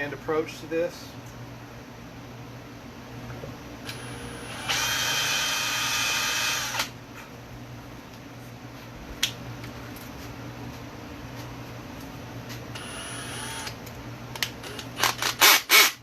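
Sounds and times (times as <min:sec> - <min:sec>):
power drill boring into wood: 0:03.9 - 0:06.9, 0:15.1 - 0:16.0.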